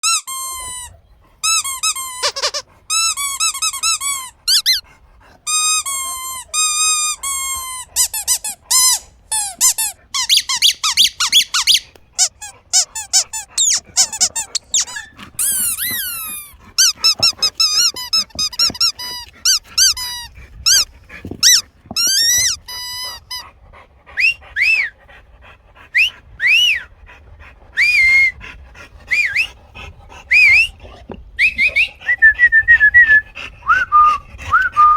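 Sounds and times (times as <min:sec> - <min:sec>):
high-pitched squeaking chirps: 0:00.0 - 0:04.8, 0:05.5 - 0:20.8, 0:21.4 - 0:23.4.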